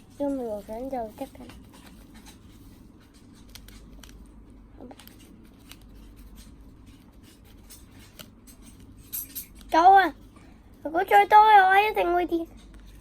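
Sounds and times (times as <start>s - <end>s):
spoon clicking and scraping: 5.0s - 9.8s.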